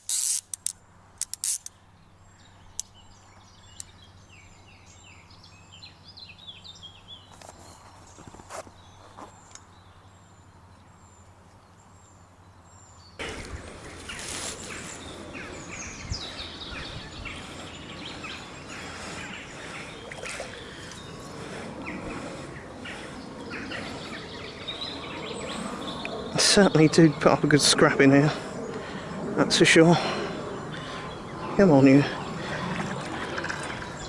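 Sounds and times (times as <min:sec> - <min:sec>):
birdsong: 0:00.0 - 0:34.0
bird calls: 0:01.4 - 0:27.4.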